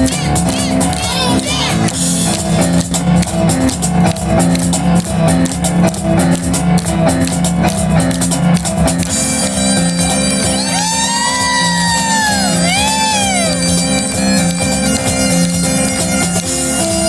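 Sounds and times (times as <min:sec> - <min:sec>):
cajon percussive strikes: 0:00.0 - 0:17.0
bagpipes playing: 0:09.3 - 0:17.0.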